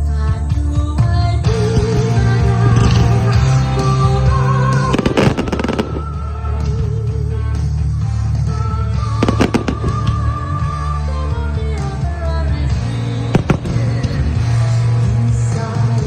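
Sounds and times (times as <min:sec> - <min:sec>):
loud music: 0:00.0 - 0:16.0
fireworks bursting: 0:01.5 - 0:06.9, 0:09.0 - 0:10.8, 0:13.0 - 0:15.2.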